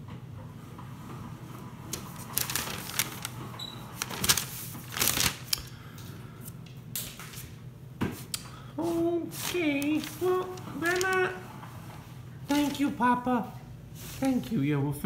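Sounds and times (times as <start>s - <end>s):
paper leaflet rustling: 1.9s - 5.7s, 8.2s - 13.2s, 14.0s - 14.6s.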